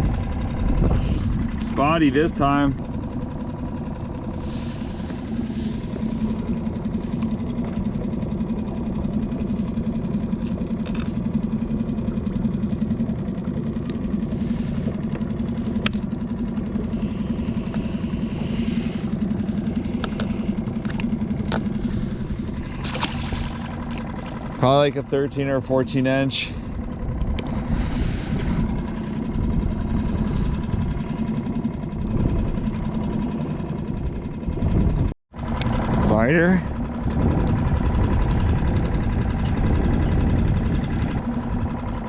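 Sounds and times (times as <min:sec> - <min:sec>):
small engine running: 0:00.0 - 0:42.0.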